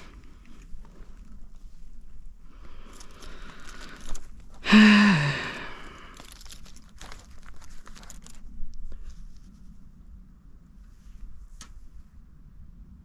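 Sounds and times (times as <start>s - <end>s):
crunching and clicking handling noises: 0.0s - 9.6s
man sighing: 4.6s - 6.2s.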